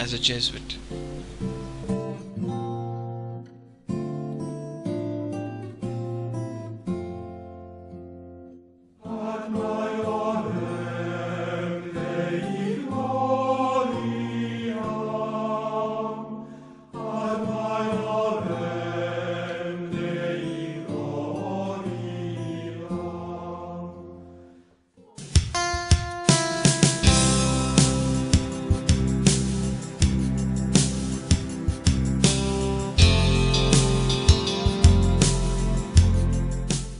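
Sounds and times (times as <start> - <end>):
slow chant-like singing: 9.0 - 25.2
loud music: 25.2 - 36.9.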